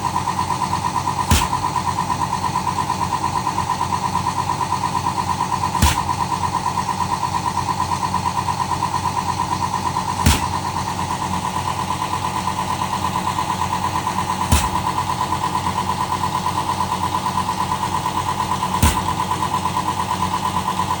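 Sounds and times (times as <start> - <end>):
air diaphragm pump pulsing: 0.1 - 7.8, 8.6 - 21.0
sharp knock: 1.3 - 1.7, 5.8 - 6.2, 10.3 - 10.6, 14.5 - 14.9, 18.8 - 19.2.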